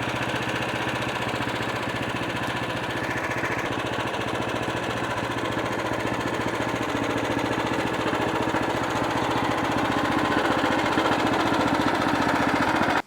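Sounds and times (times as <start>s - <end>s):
sawmill engine running under load: 0.0s - 13.0s.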